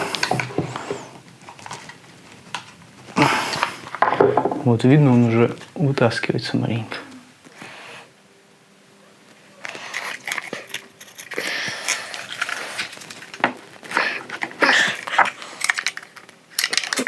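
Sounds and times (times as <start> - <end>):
plastic and metal parts clicking: 14.2 - 17.0.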